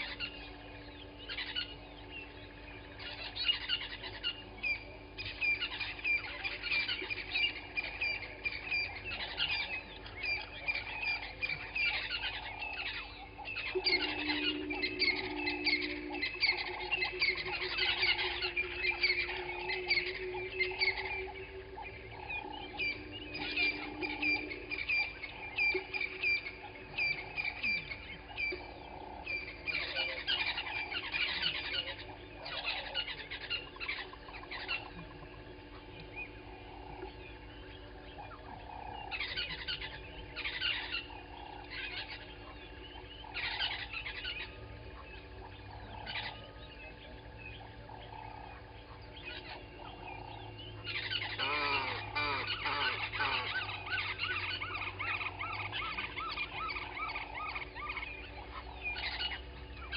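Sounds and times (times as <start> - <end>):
mixed birdsong: 0.0 - 59.9
harsh honking calls: 13.7 - 21.8, 51.4 - 53.9.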